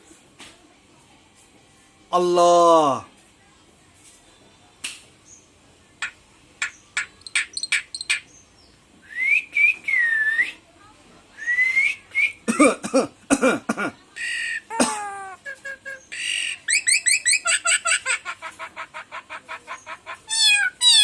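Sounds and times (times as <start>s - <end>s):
myna bird clicks and whistles: 6.0s - 8.3s.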